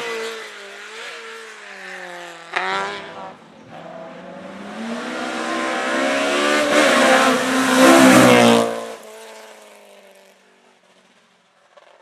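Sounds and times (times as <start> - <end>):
race car engine passing: 2.5 - 9.2.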